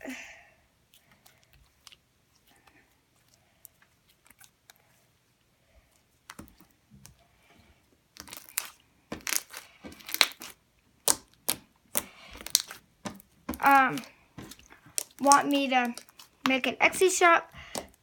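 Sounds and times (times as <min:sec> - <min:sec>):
slime crackling and popping: 0:08.1 - 0:18.0.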